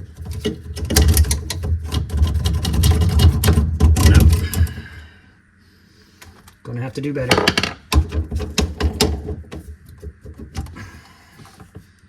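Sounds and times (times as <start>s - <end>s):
drain snake cable rattling in pipe: 0.0s - 4.9s.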